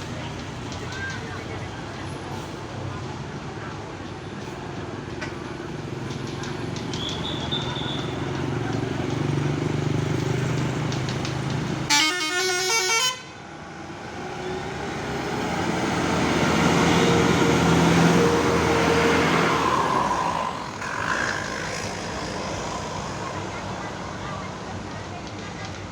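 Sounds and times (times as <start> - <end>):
bus engine running: 0.0 - 25.9
bus passing by: 0.0 - 25.9
multi-note bus horn tune: 11.9 - 13.4.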